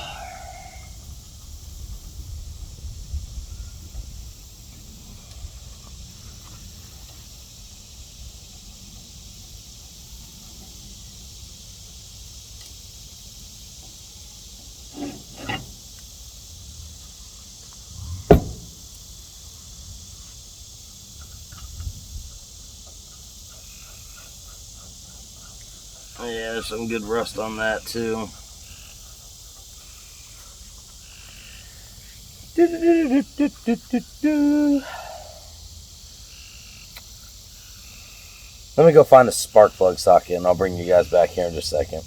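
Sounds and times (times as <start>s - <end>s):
faint steady high hiss: 0.0s - 42.0s
tools and engine parts clinking: 15.0s - 15.8s, 18.1s - 18.8s.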